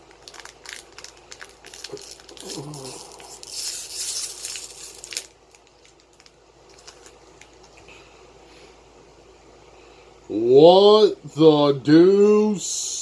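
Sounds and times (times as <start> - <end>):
foil pack crinkling and tearing: 0.0 - 7.9.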